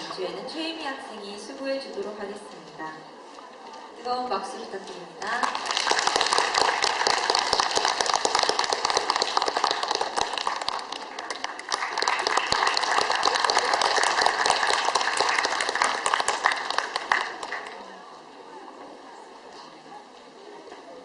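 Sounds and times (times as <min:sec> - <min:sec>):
audience applauding: 0:05.3 - 0:17.9.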